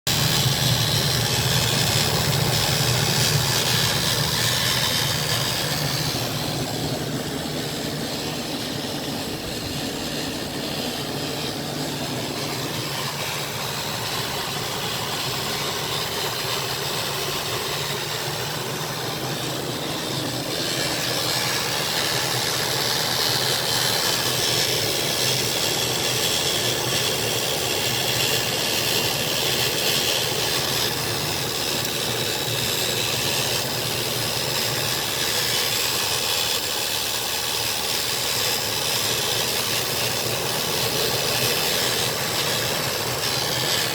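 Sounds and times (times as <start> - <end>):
low hum: 0.1 - 27.8
strong hiss: 0.1 - 43.9
van engine running: 0.1 - 43.9.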